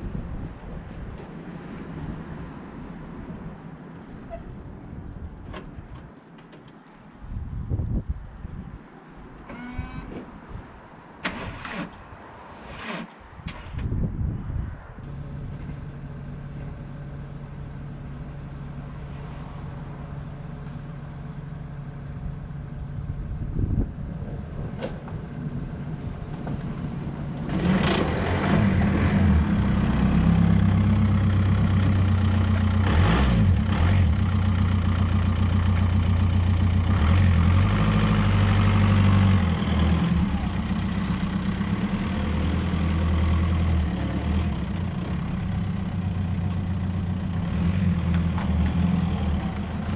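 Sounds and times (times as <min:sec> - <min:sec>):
vehicle engine idling: 0:15.1 - 0:24.3, 0:28.8 - 0:49.9.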